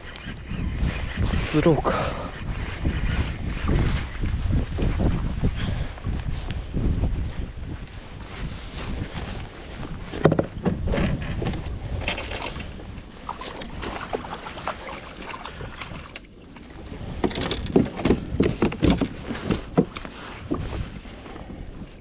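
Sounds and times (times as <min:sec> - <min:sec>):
wind rumbling on microphone: 0:00.0 - 0:22.0
water splashing: 0:13.2 - 0:16.8.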